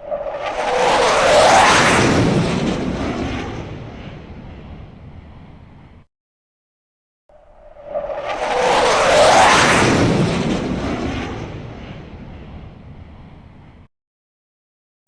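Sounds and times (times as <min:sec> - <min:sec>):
fighter jet flying past: 0:00.0 - 0:06.1, 0:07.3 - 0:13.9.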